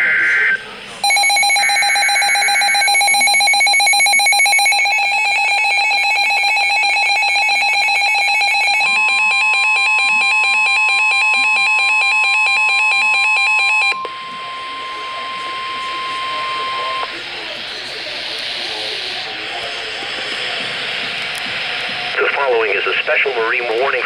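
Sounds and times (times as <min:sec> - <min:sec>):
screechy data burst: 0:00.0 - 0:06.9
steady higher alarm tone: 0:00.0 - 0:17.6.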